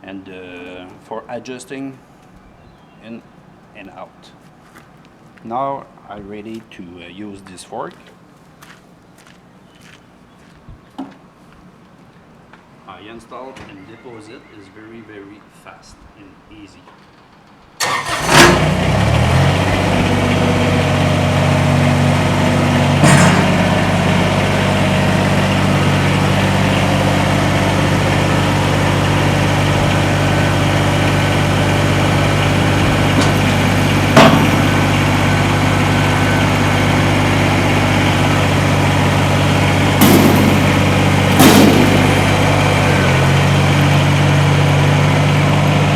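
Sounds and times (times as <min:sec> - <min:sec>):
diesel tractor engine running: 0:17.8 - 0:45.9
sharp metallic knocks: 0:19.7 - 0:35.3, 0:38.4 - 0:44.1.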